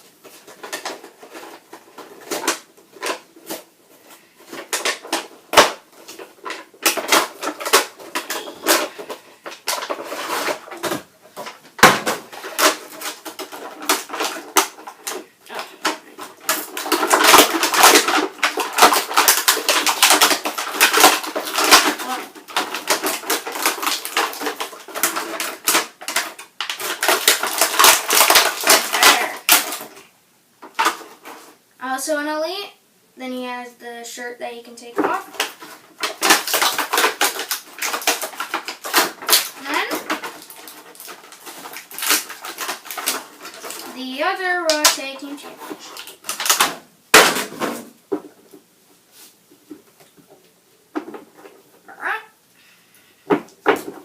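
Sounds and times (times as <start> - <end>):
plastic and cardboard crackling: 0.0 - 31.6, 34.5 - 52.4, 53.2 - 54.0.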